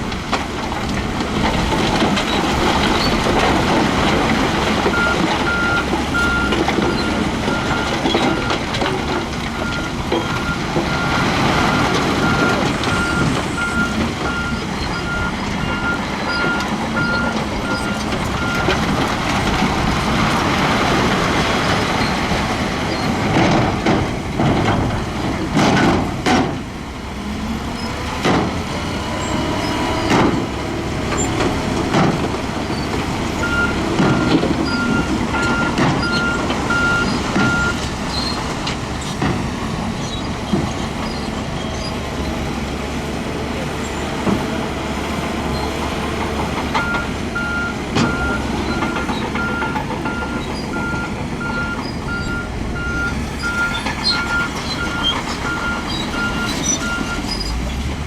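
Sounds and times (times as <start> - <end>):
heavy machinery running: 0.0 - 58.0
reversing alarm beeping: 33.4 - 37.9, 46.8 - 57.2.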